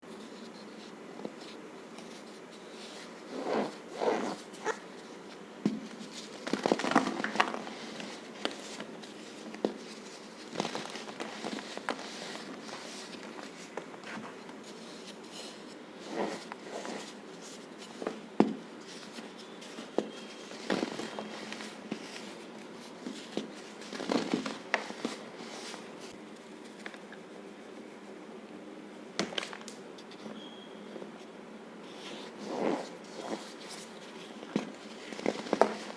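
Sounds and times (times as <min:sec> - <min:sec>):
powder crunching and crackling: 0:06.4 - 0:13.8.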